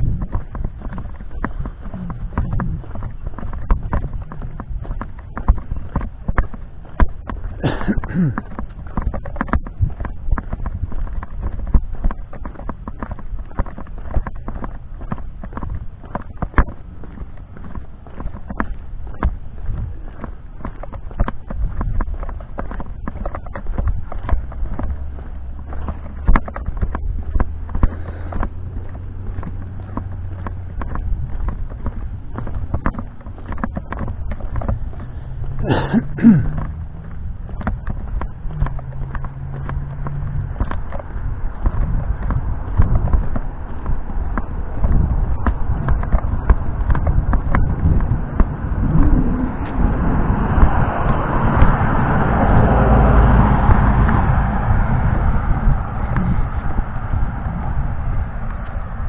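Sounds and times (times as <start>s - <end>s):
footsteps: 0.0s - 59.0s
low rumble: 0.0s - 59.0s
low steady engine hum: 0.0s - 59.0s
descending pitched sound: 48.5s - 56.5s.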